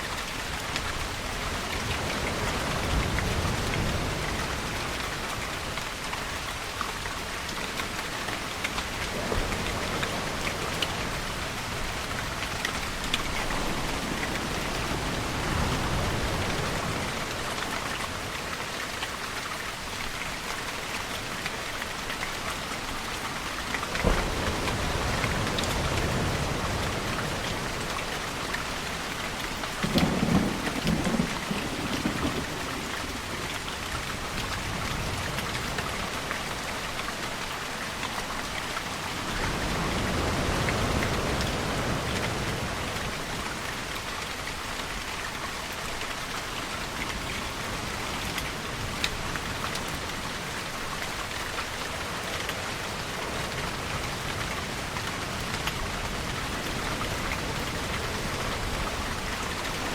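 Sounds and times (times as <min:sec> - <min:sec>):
heavy rain falling: 0:00.0 - 0:59.9
thunder rumbling: 0:23.9 - 0:27.9, 0:29.8 - 0:33.6.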